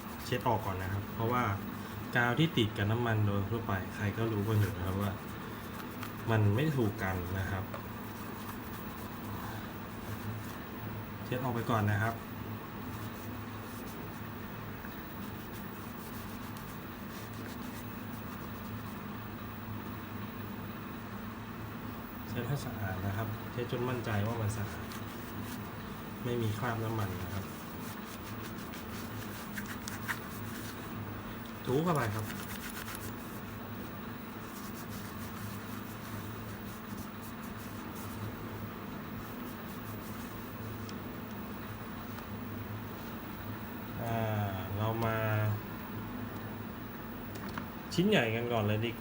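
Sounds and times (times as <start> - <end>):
rubbing strokes on plastic grip: 0.0 - 2.6, 3.8 - 10.6, 11.4 - 14.4, 15.0 - 19.0, 23.6 - 41.0
cloth wiping over plastic: 0.0 - 2.8, 3.7 - 10.6, 11.3 - 19.1, 23.7 - 41.0
steady low hum: 0.0 - 49.0.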